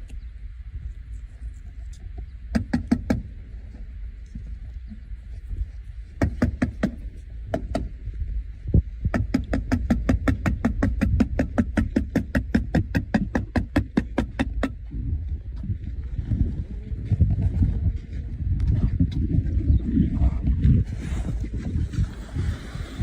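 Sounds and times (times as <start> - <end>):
hammer striking nails: 9.1 - 14.8
low rumble: 14.2 - 23.0.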